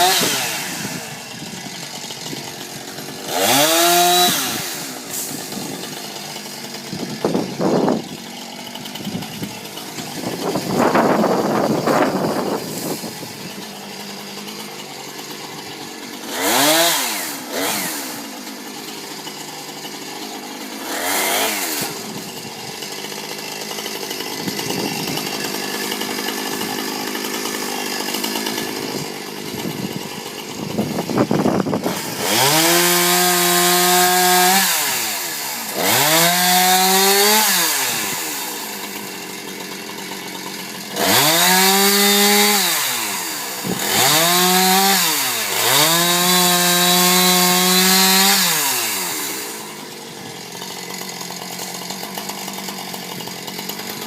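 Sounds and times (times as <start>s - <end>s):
chainsaw idling and revving: 0.0s - 54.0s.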